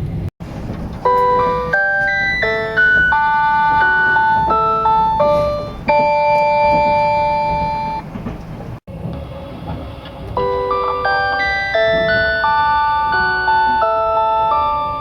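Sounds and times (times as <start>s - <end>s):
train running rumble: 0.0s - 15.0s
train chime over speaker: 1.0s - 8.1s, 10.4s - 15.0s.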